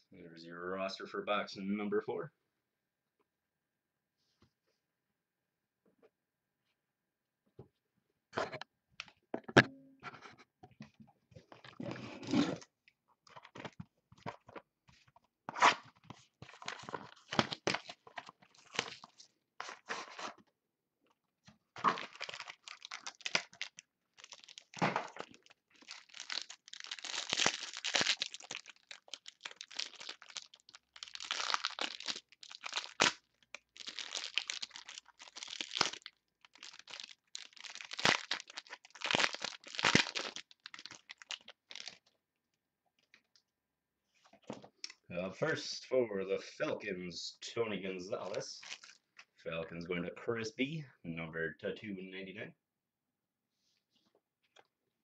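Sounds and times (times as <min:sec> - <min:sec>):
wrapping tearing and crinkling: 0:15.6 - 0:20.3, 0:21.8 - 0:42.2, 0:48.2 - 0:49.1.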